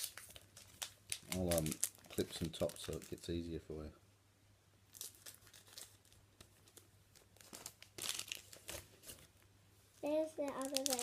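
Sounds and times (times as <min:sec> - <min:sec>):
card wrappers crinkling and tearing: 0:00.0 - 0:03.4, 0:04.9 - 0:09.3, 0:10.0 - 0:11.0.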